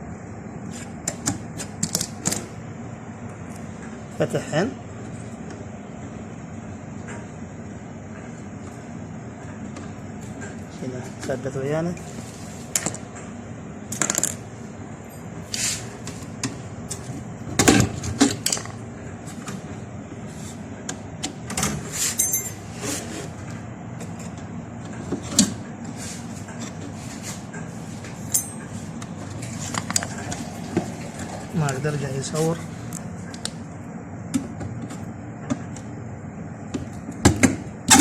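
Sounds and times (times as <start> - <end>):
metal tools clicking and clanking: 22.1 - 22.7, 28.3 - 28.7.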